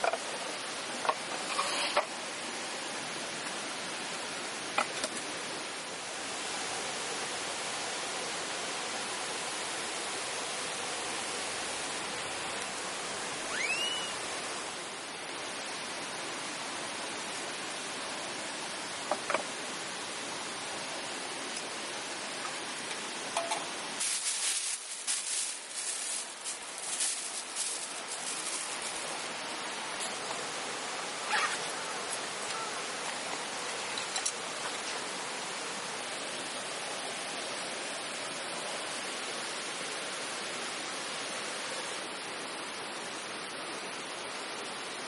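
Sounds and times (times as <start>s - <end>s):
flowing stream water: 0.0s - 45.0s
short rising call: 13.5s - 14.2s
crackling and rustling: 22.5s - 30.5s.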